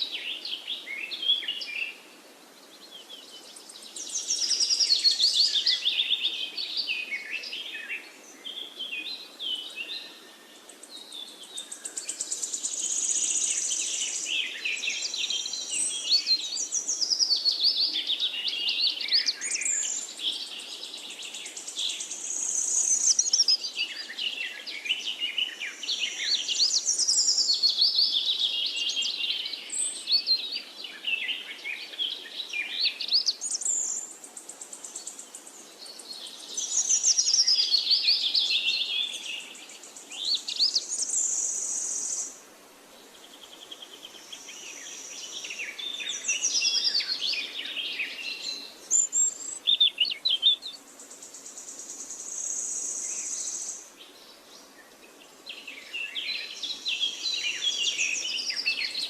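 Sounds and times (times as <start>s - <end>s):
songbird singing: 0.0s - 59.0s.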